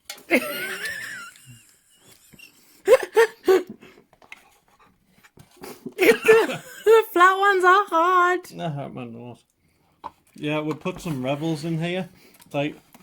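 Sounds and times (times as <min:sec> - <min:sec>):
person laughing: 0:00.3 - 0:03.8, 0:06.0 - 0:07.1.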